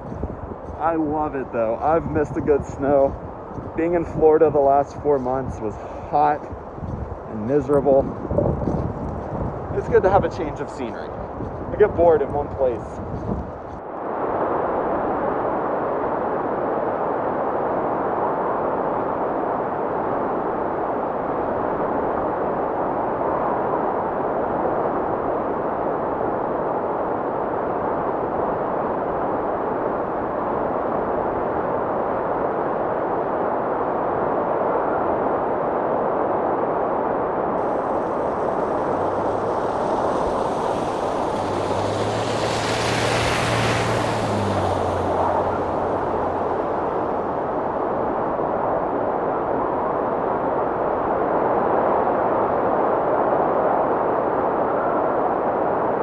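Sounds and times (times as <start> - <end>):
rushing wind: 0.0 - 21.5, 37.6 - 48.5
blizzard wind rushing: 37.6 - 48.2
vehicle engine hum: 37.6 - 48.3.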